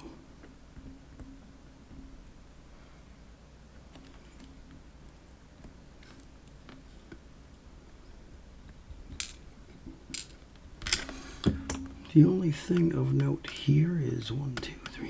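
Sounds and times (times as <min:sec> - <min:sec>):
small metal lock parts clicking: 0:10.1 - 0:15.0.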